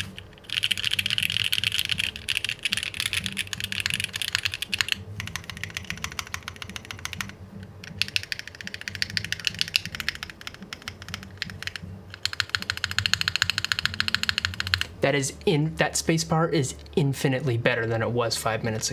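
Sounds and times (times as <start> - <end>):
mechanical keyboard typing clacks: 0.0 - 14.9.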